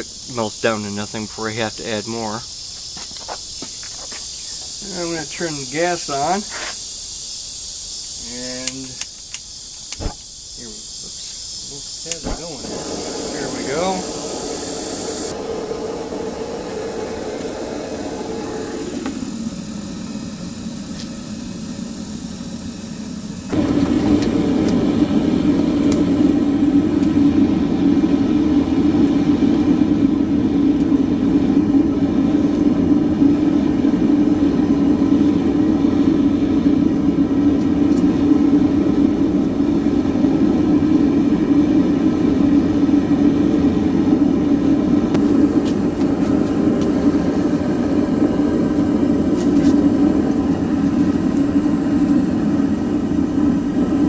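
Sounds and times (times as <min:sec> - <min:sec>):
gas burner roaring: 0:04.2 - 0:54.0.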